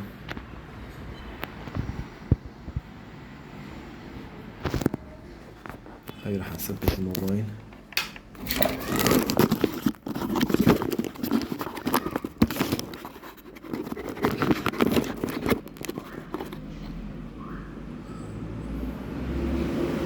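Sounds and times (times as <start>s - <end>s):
phone handling noise: 6.8s - 16.6s.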